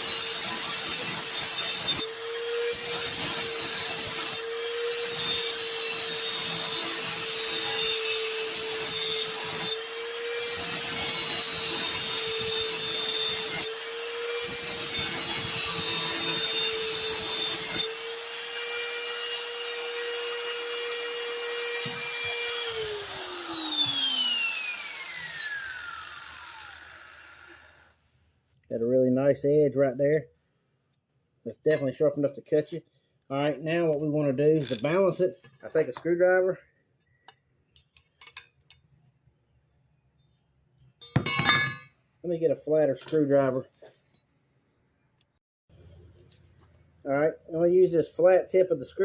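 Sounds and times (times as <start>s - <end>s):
grinding wheel on metal: 0.0s - 27.7s
grinder motor whine: 0.0s - 27.9s.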